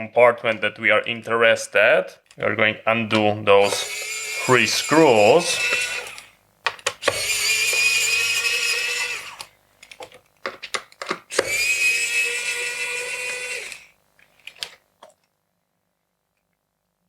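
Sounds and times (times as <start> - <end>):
electric screwdriver whirring: 3.6 - 9.5, 11.3 - 14.8.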